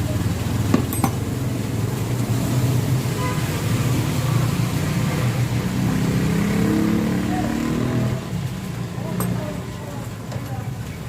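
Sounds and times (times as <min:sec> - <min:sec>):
vehicle engine accelerating: 0:04.0 - 0:09.6.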